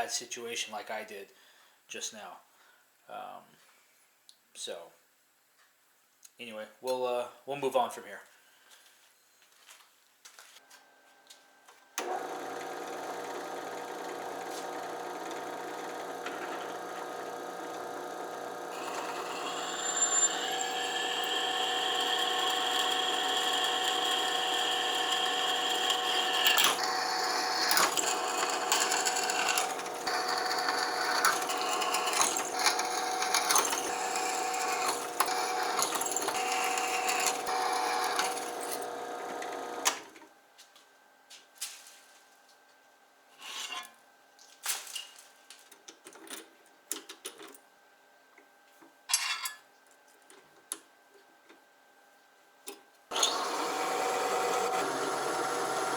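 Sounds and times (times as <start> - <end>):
motor-driven wire wheel running: 12.0 - 40.0, 53.1 - 55.9.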